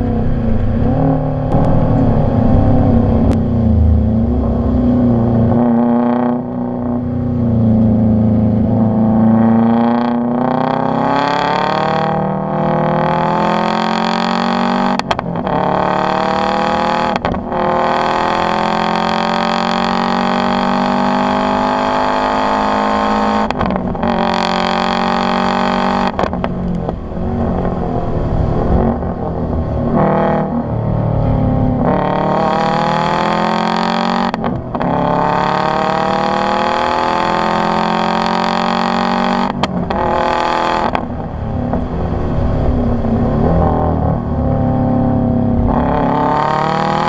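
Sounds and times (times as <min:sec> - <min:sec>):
turbocharged car engine accelerating: 0:00.0 - 0:47.0.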